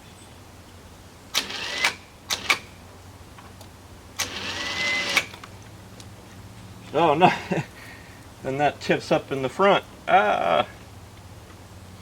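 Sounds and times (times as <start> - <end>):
sharp clicks: 1.3 - 2.7, 3.6 - 6.1
winch motor whine: 1.4 - 2.6, 4.2 - 5.5.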